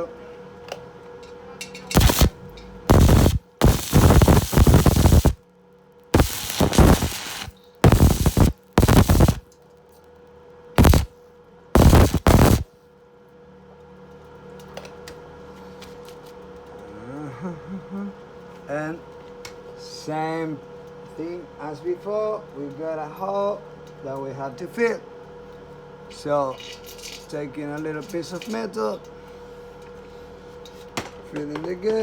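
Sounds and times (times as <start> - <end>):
welding arc crackling: 1.9 - 5.4, 6.2 - 9.4, 10.8 - 11.1, 11.8 - 12.7.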